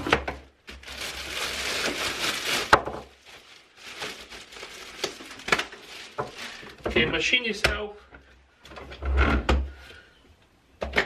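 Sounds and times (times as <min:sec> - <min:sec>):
plastic rustling and crinkling: 0:00.0 - 0:07.5.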